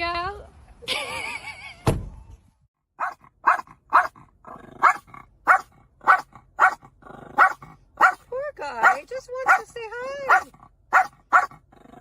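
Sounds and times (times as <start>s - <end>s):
dog barking: 3.0s - 4.2s, 4.8s - 11.6s.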